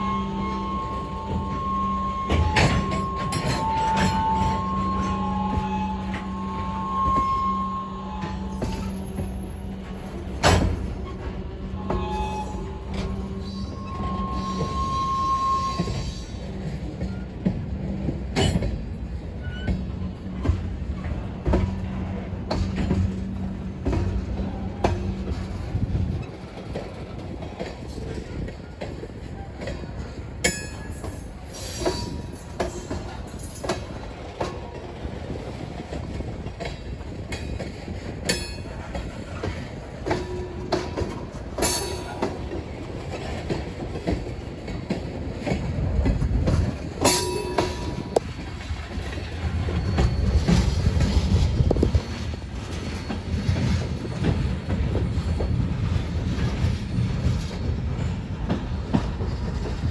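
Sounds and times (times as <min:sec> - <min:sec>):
train wheels rumbling on rail: 0:00.0 - 0:59.9
wheel squeal: 0:11.9 - 0:16.4, 0:49.2 - 0:54.4
sharp metallic clank: 0:47.0 - 0:48.2.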